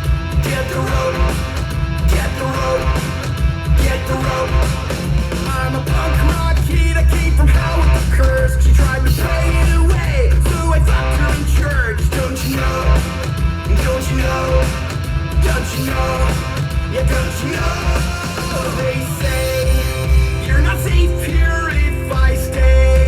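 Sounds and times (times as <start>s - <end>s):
heavy bass beat: 0.0s - 23.0s
rock song with guitar and singing: 0.0s - 23.0s.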